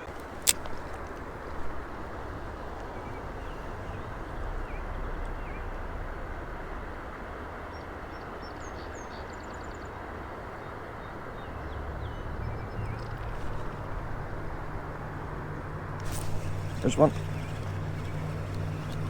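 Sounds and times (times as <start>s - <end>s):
small birds chirping: 11.0s - 19.0s.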